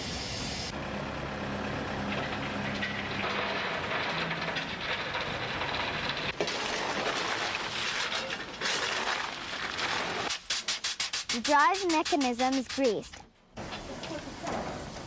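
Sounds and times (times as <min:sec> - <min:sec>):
steam locomotive rushing and clattering: 0:10.5 - 0:13.2.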